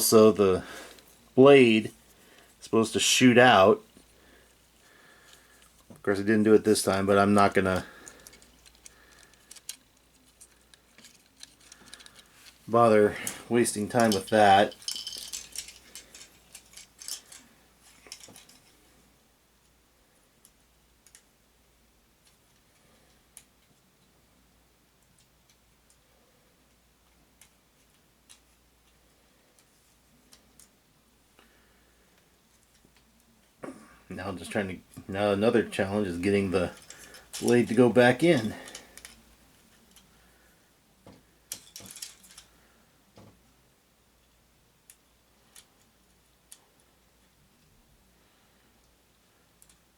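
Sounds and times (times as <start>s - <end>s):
plastic toy clicks and rattles: 8.2s - 12.6s, 14.0s - 17.4s, 41.5s - 42.5s.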